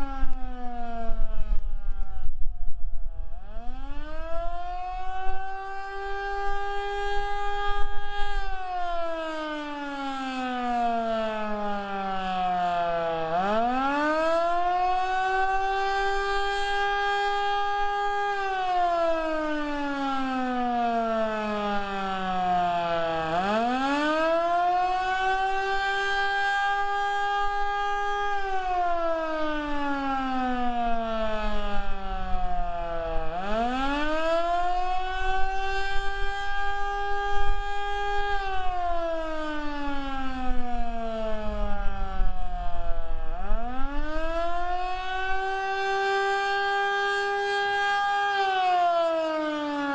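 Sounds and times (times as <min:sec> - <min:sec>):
wind rumble on microphone: 0:00.0 - 0:09.2, 0:26.7 - 0:45.6
warning siren rising and falling: 0:00.0 - 0:49.9.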